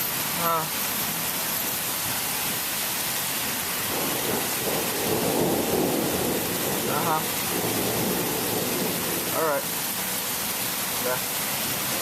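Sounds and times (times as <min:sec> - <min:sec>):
steady rain: 0:00.0 - 0:12.0
thunder rumbling: 0:03.8 - 0:09.6.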